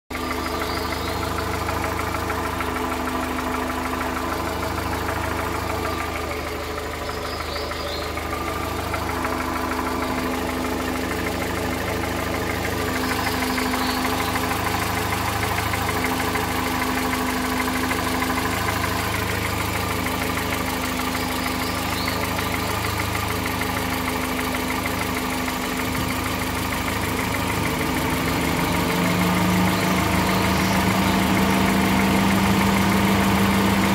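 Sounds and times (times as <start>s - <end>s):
car engine idling with knocking noise: 0.1s - 33.9s.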